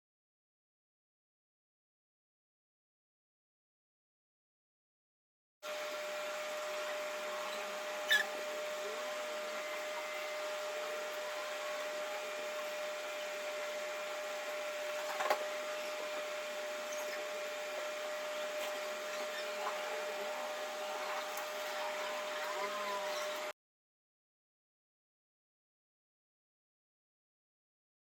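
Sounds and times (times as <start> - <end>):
small motor whirring hiss: 5.7 - 23.5.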